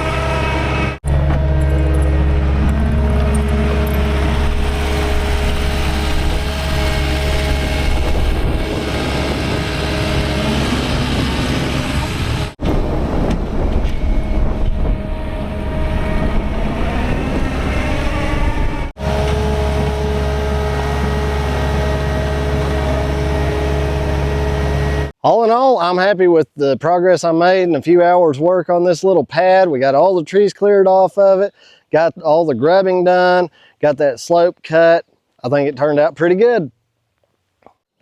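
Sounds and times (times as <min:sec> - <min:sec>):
diesel loader engine running: 0:00.0 - 0:25.1.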